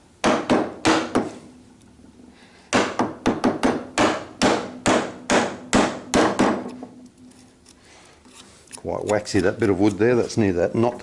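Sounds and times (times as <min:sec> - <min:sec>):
mallet striking chisel into wood: 0:00.2 - 0:01.4, 0:02.7 - 0:06.8.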